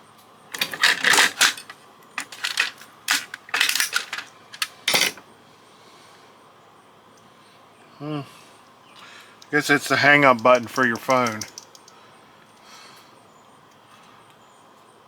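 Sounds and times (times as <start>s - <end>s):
plastic and metal parts clattering: 0.5s - 5.2s, 10.4s - 11.8s.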